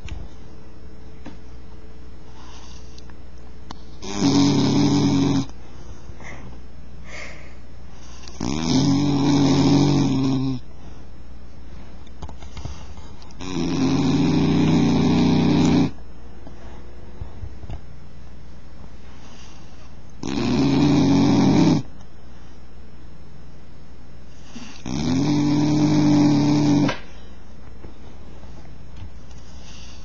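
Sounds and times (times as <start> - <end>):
dog snoring: 3.8 - 5.6, 8.0 - 10.7, 13.3 - 16.0, 19.2 - 21.9, 24.3 - 27.1.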